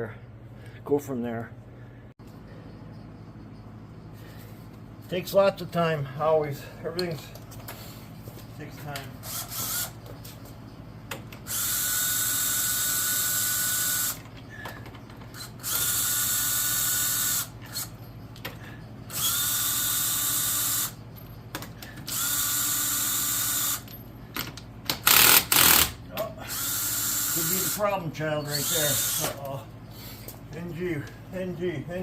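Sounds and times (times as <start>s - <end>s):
power tool whining: 9.2s - 10.2s, 11.3s - 30.3s.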